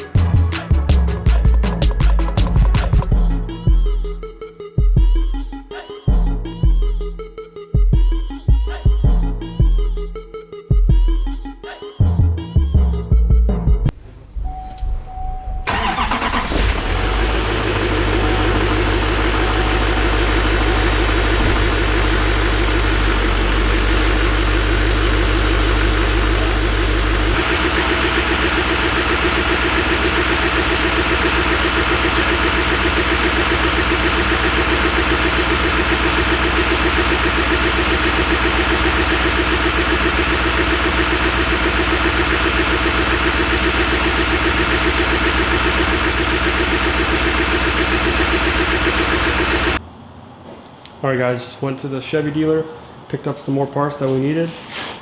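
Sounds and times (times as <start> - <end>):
vehicle engine idling: 0.0 - 4.2, 12.3 - 49.9.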